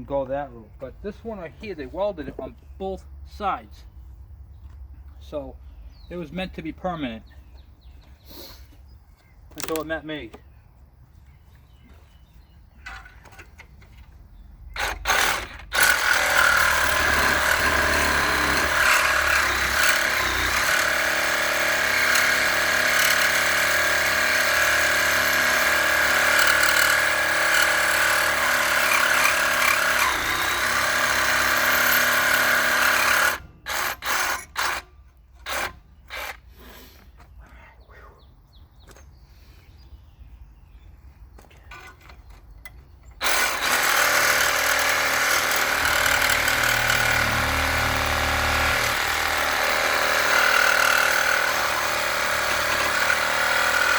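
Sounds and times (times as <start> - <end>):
power tool cutting steel: 14.8 - 34.9, 43.2 - 53.9.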